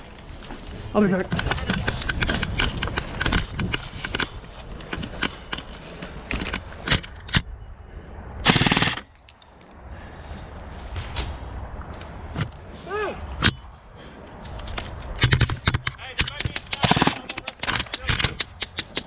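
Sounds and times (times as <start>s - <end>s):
full-auto burst: 8.4s - 9.1s, 16.4s - 18.1s
airsoft guns firing: 8.4s - 9.2s, 16.0s - 19.0s.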